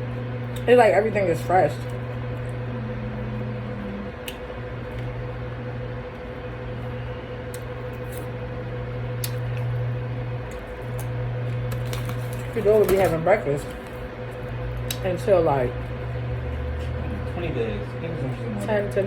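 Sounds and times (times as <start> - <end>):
low room hum: 0.0 - 19.0.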